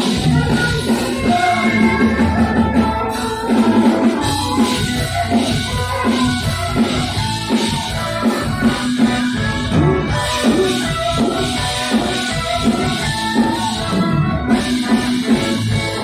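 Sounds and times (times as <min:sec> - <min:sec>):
drum kit: 0:00.0 - 0:16.0
guitar: 0:00.0 - 0:16.0
live band music: 0:00.0 - 0:16.0.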